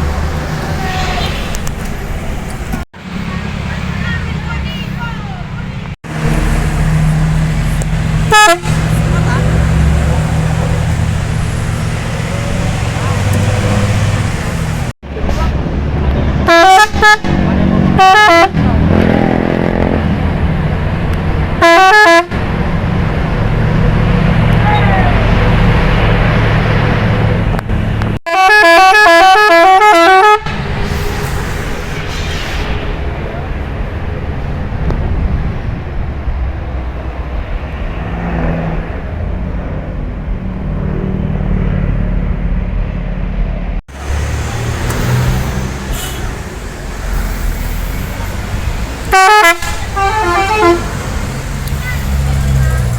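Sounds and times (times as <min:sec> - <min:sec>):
bus engine running: 0:00.0 - 0:37.9, 0:38.8 - 0:52.9
road rumble: 0:00.0 - 0:52.9
bus horn melodic toots: 0:08.3 - 0:09.0, 0:16.5 - 0:17.3, 0:18.0 - 0:18.6, 0:21.6 - 0:22.3, 0:28.3 - 0:30.6, 0:44.1 - 0:47.3, 0:49.0 - 0:52.1.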